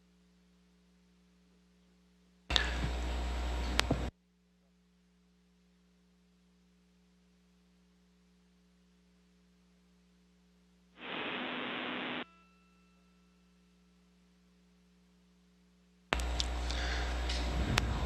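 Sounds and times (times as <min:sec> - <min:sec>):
steady low hum: 0:00.0 - 0:18.0
radio static bursts: 0:11.0 - 0:12.2.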